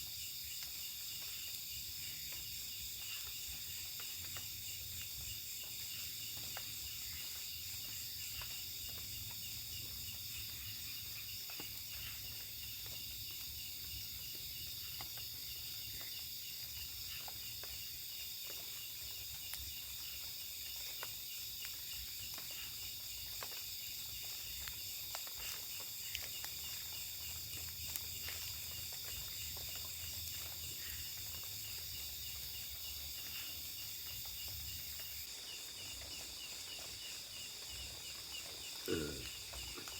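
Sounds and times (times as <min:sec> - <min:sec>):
crickets and insects trilling: 0:00.0 - 0:39.9.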